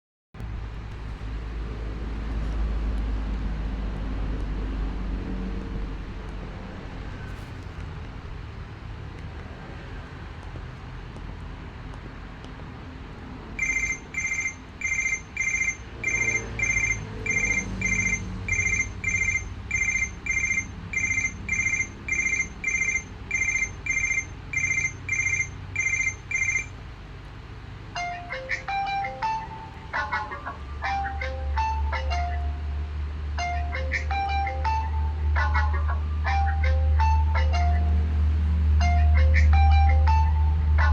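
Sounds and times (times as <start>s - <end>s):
high electronic ringtone beeps: 13.6s - 26.8s
melodic ringtone: 13.6s - 26.8s, 28.0s - 32.7s, 33.4s - 38.0s, 38.8s - 40.9s.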